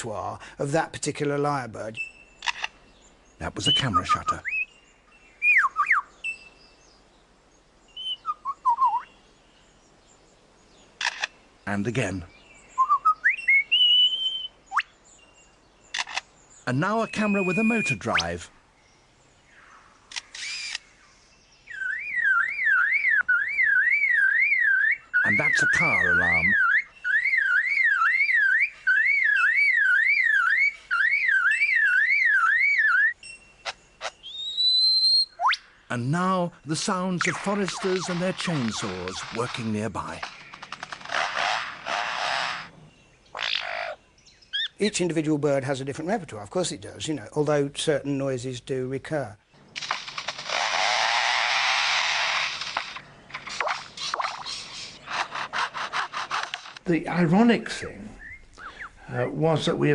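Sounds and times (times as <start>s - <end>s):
lyrebird singing: 0.0s - 59.9s
sharp clicks: 2.4s - 2.8s, 11.0s - 11.4s, 15.9s - 16.3s, 20.1s - 20.9s, 37.2s - 42.7s, 49.8s - 56.8s
bird mimicking car alarm: 21.7s - 35.7s, 36.9s - 42.7s.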